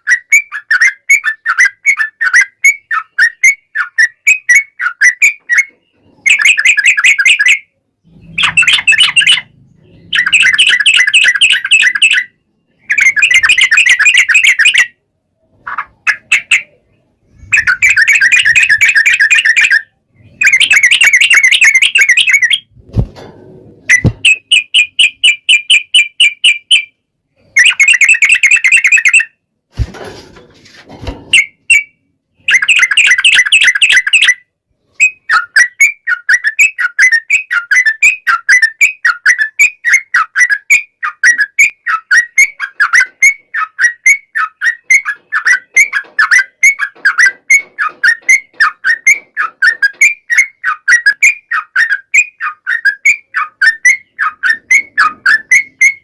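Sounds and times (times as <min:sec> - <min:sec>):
bird singing chattering phrases: 0:00.0 - 0:14.9, 0:15.5 - 0:22.7.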